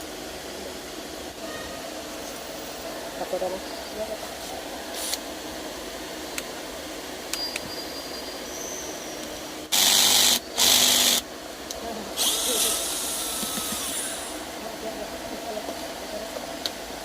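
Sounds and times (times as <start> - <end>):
cordless drill bursts: 9.7 - 11.2, 12.2 - 14.4.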